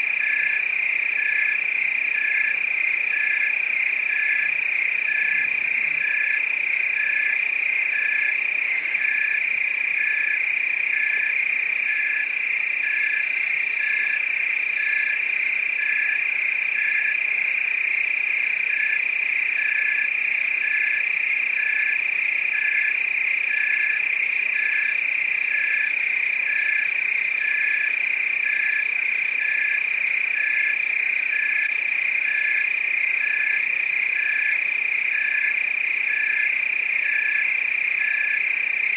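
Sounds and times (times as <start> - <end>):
high-pitched insect trill: 0.0 - 38.9
frog pulsed call: 0.1 - 17.2, 19.6 - 38.7.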